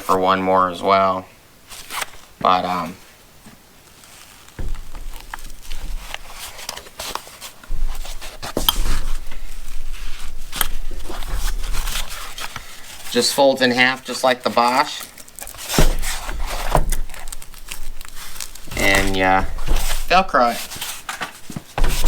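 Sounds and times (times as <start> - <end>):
low handling bumps: 4.4 - 13.3, 15.5 - 22.0.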